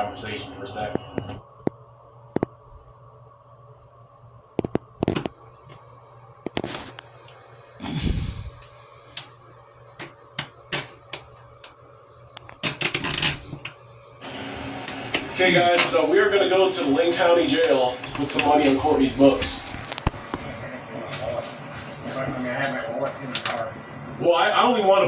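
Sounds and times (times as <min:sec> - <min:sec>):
faint steady hum: 0:00.0 - 0:25.0
sharp clicks and taps: 0:02.4 - 0:02.6, 0:04.6 - 0:05.4, 0:06.4 - 0:07.1.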